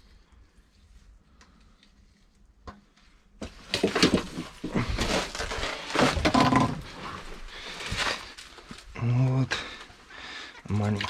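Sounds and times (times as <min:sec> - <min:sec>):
knocking and clattering of fish handling: 0:02.7 - 0:07.0.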